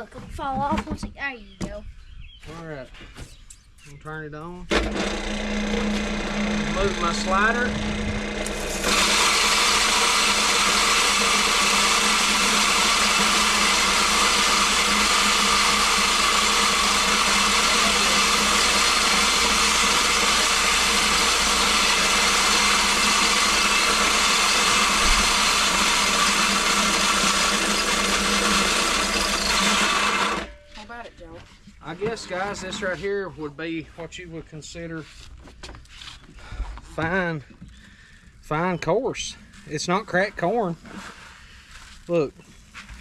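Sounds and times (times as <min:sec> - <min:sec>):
feed grinder grinding corn: 0:04.7 - 0:30.6, 0:31.8 - 0:33.3
motor hum: 0:04.7 - 0:30.8.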